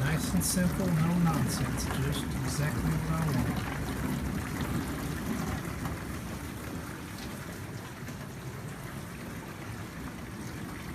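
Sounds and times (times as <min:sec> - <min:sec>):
dishwasher humming: 0:00.0 - 0:07.5
water spraying and sloshing: 0:00.0 - 0:10.9.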